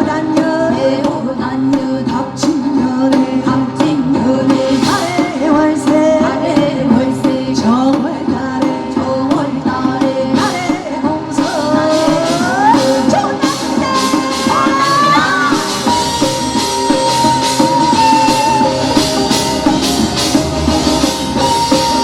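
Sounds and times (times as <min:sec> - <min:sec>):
person singing: 0:00.0 - 0:22.0
steady drum beat: 0:00.0 - 0:22.0
sliding melody: 0:14.2 - 0:22.0.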